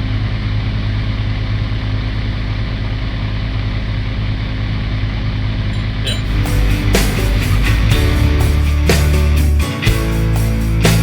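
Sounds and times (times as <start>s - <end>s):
large engine droning: 0.0s - 11.0s.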